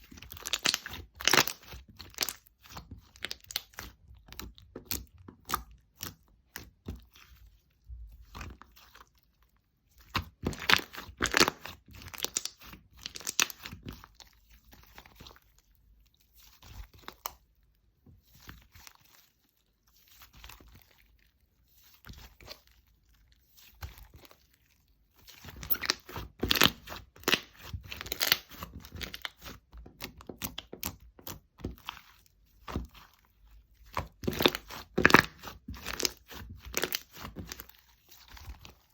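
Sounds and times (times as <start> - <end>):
slime crackling and popping: 0.0 - 6.8, 10.0 - 14.2, 25.4 - 33.0, 33.8 - 38.9.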